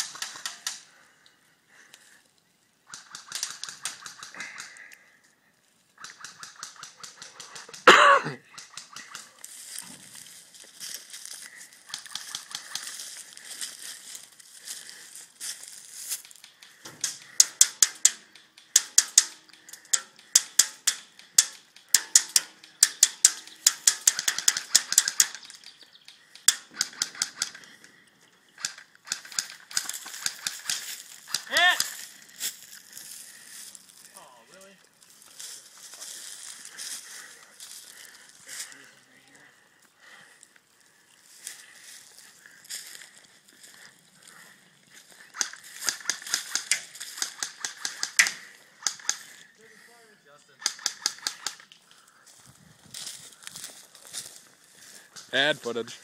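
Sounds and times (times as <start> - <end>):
airsoft guns firing bursts: 2.9 - 4.7, 6.0 - 7.9, 20.0 - 25.7, 26.3 - 27.8, 28.6 - 31.9, 45.3 - 49.2, 50.6 - 51.7.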